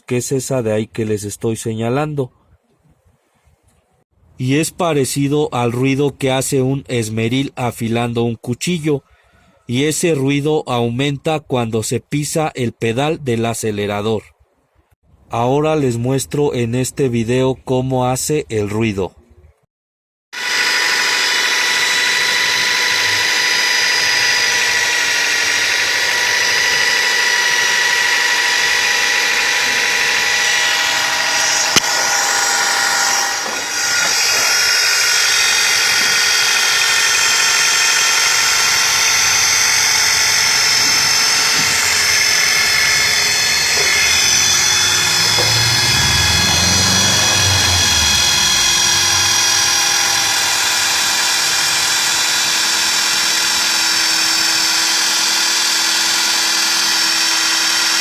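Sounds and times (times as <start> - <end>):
engine grinding whine: 20.4 - 58.0.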